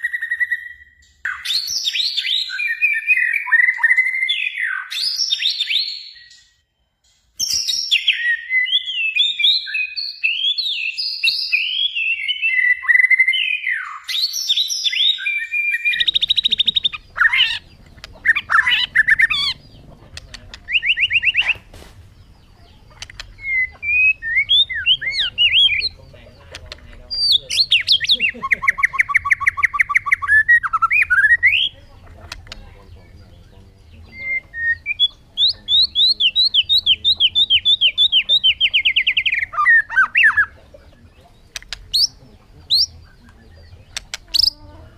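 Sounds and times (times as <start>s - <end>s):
bird singing whistled phrases: 0.0s - 6.6s, 7.4s - 19.8s, 20.6s - 22.4s, 23.0s - 26.0s, 27.1s - 31.8s, 33.1s - 40.6s
bird buzzy trills: 14.0s - 44.9s
low background hum: 16.0s - 44.9s.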